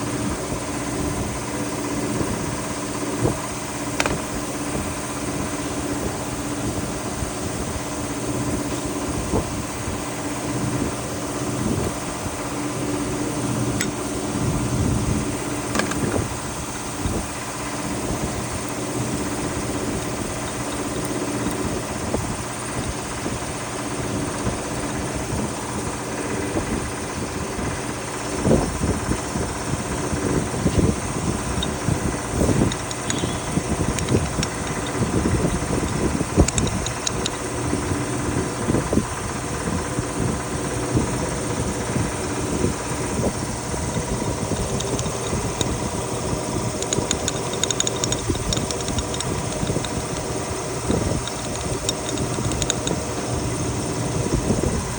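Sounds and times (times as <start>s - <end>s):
car engine idling: 0.0s - 54.9s
light clicks: 31.5s - 37.5s, 42.4s - 53.2s.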